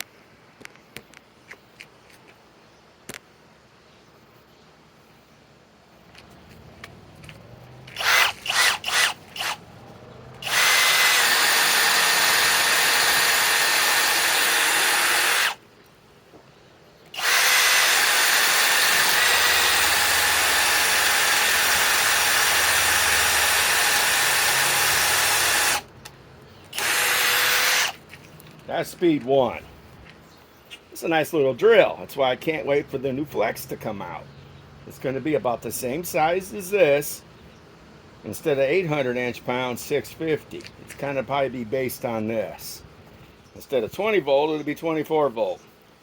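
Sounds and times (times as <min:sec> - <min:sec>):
hammer drill running: 0:07.9 - 0:09.6, 0:10.4 - 0:15.6, 0:17.2 - 0:25.9, 0:26.7 - 0:28.0.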